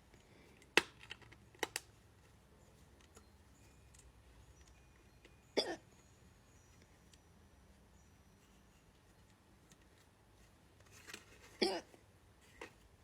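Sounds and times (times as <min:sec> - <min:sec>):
person hiccuping: 0:11.6 - 0:11.9.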